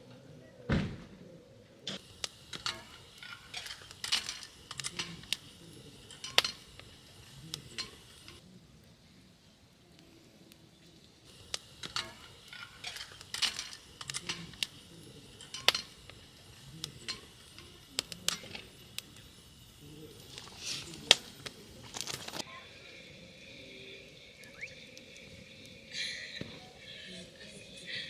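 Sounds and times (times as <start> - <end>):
utensils clinking on cookware: 2.0 - 8.4, 11.5 - 28.0.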